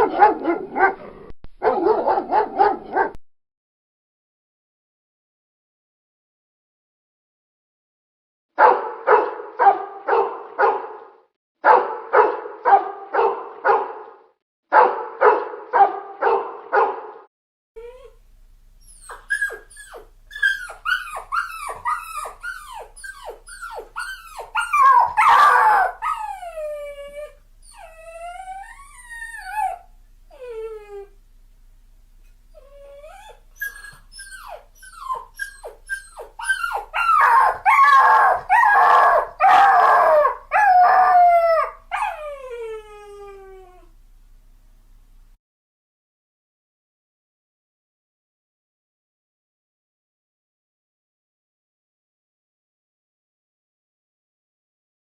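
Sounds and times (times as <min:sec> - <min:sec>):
dog barking: 0:00.0 - 0:03.2, 0:08.6 - 0:17.3, 0:23.7 - 0:26.2, 0:36.6 - 0:40.4
dog yipping and whining: 0:00.0 - 0:03.2, 0:17.8 - 0:18.2, 0:18.8 - 0:31.1, 0:32.5 - 0:43.9.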